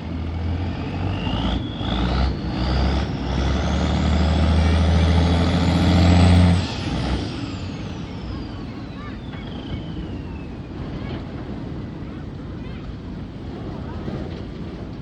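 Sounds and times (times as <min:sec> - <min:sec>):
high whine rising in pitch: 0:00.0 - 0:11.0
diesel engine under load: 0:00.0 - 0:15.0.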